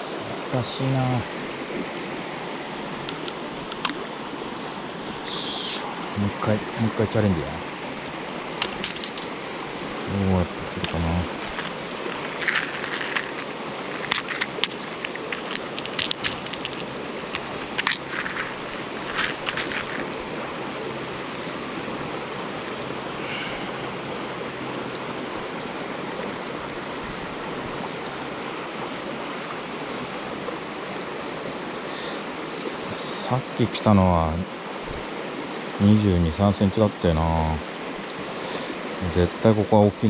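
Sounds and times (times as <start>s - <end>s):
stream water rushing: 0.0s - 40.0s
small sharp clicks and knocks: 3.0s - 4.0s, 8.6s - 9.4s.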